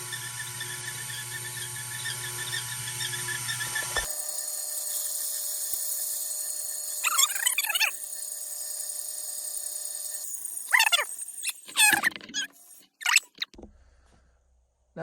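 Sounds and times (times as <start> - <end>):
file strokes squealing: 0.0 - 4.2, 4.8 - 13.6
lathe whining: 0.0 - 13.3.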